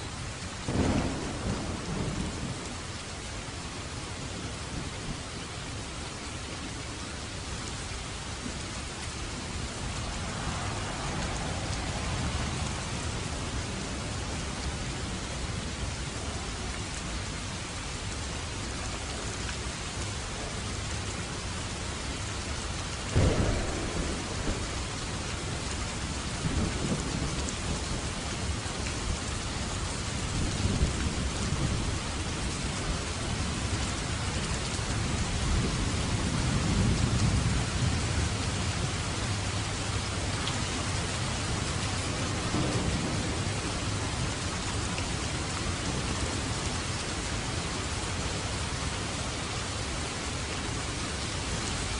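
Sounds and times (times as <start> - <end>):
heavy rain: 0.0 - 51.9
thunder clap and rumbles: 0.6 - 3.0, 9.4 - 15.7, 22.7 - 48.3.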